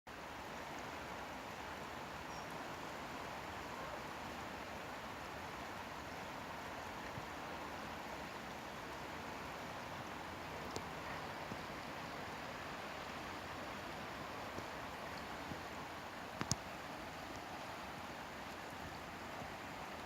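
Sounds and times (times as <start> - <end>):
river water flowing: 0.1 - 20.0.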